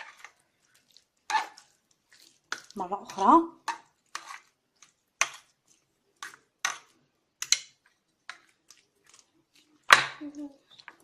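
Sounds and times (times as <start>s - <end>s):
utensil scraping against a bowl: 0.0s - 6.9s.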